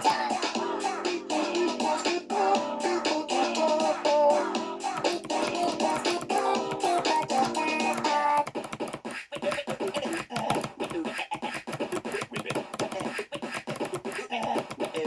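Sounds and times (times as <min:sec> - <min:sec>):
melodic music: 0:00.0 - 0:08.5
mechanical keyboard key clicks: 0:05.0 - 0:11.0, 0:11.6 - 0:15.0.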